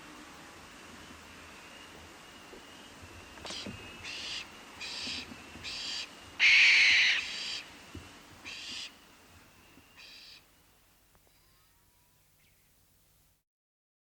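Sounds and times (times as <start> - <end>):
owl screeching: 3.5 - 7.6, 8.5 - 8.9, 10.0 - 10.4.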